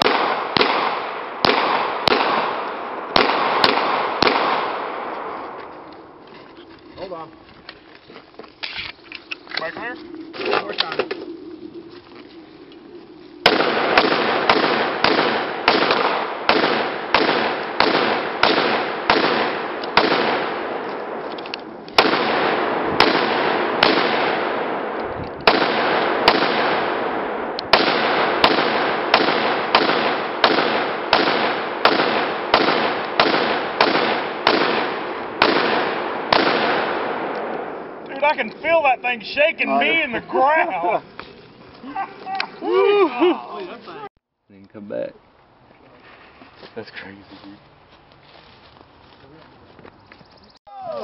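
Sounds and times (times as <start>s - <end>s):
rifle shots echoing: 0.0s - 5.8s, 13.4s - 40.2s.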